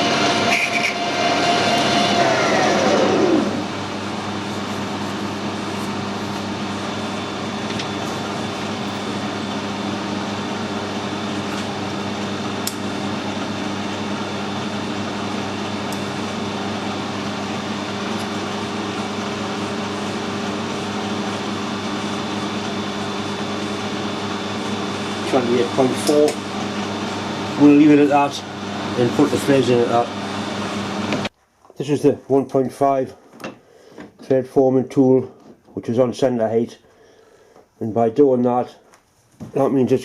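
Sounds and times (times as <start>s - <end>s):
metal lathe humming: 0.0s - 31.3s.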